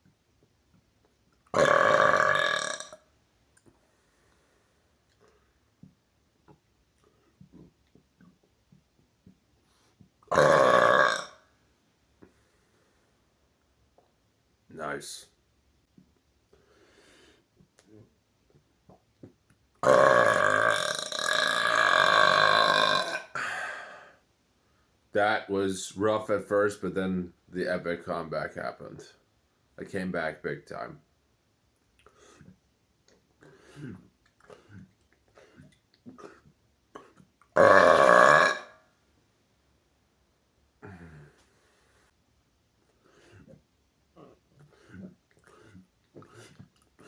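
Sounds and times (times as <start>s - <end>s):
man burping: 1.5s - 3.0s, 10.3s - 11.4s, 19.8s - 24.2s, 33.7s - 38.8s, 40.8s - 41.4s.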